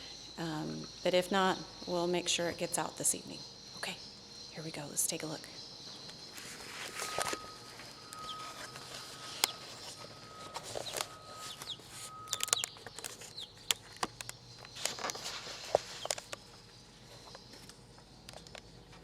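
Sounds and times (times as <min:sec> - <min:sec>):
bird chirps: 0:00.0 - 0:19.0
faint whistle-like tone: 0:06.8 - 0:12.6.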